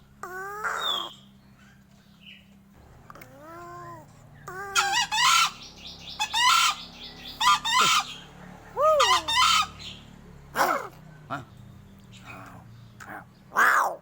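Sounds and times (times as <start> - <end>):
crow calling: 0.2 - 1.8, 3.4 - 10.0, 13.1 - 14.0.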